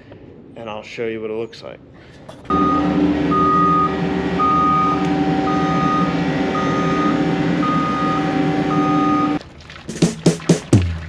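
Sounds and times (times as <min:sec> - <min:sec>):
engine running: 0:02.3 - 0:09.4
reversing alarm beeping: 0:02.5 - 0:09.4.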